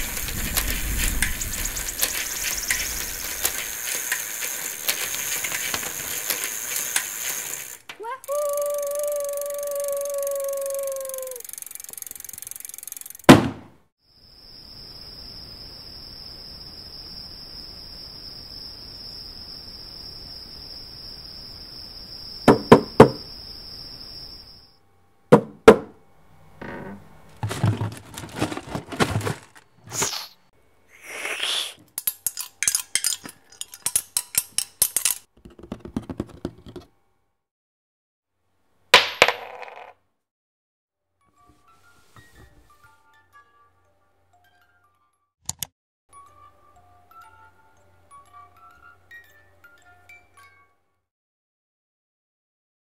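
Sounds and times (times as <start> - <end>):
sharp knock: 13.3 - 13.7
short rustling: 27.4 - 30.3
clinks knocks and clicks: 32.0 - 35.3.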